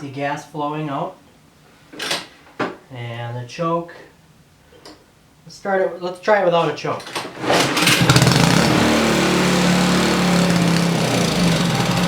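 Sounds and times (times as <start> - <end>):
small gasoline engine running: 7.5 - 12.0.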